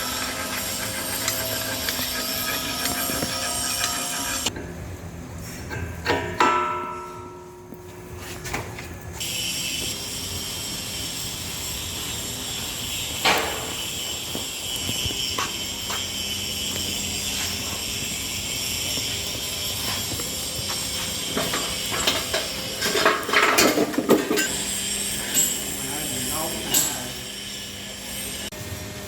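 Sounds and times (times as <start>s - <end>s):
workshop machinery humming: 0.0s - 29.0s
metal clanks: 5.6s - 7.8s, 21.3s - 24.6s.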